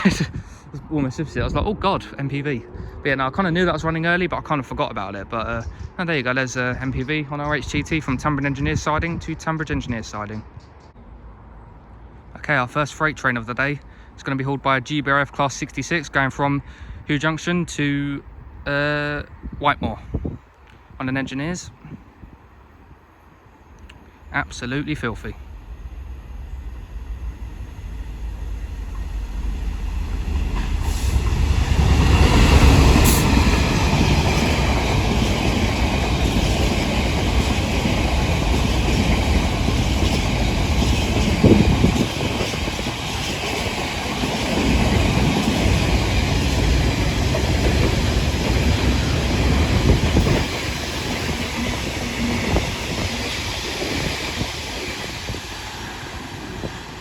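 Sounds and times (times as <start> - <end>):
diesel locomotive passing: 0.0 - 20.1, 20.8 - 57.0
wagons clattering over rails: 28.9 - 55.2.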